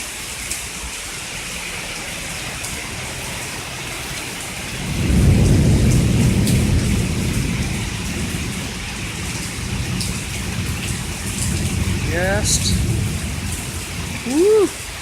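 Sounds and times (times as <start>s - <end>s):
heavy rain hissing: 0.0s - 15.0s
thunder rumbling: 4.6s - 14.8s.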